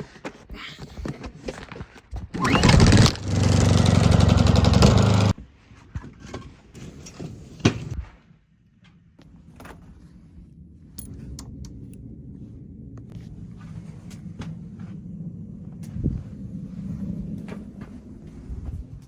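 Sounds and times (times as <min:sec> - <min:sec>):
gasoline engine starting and running: 0:02.4 - 0:05.4.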